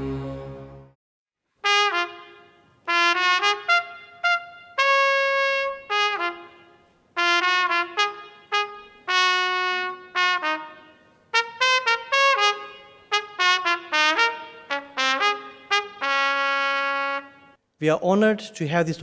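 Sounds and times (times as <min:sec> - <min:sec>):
bugle call on brass horn: 0:01.6 - 0:06.6, 0:07.2 - 0:17.4.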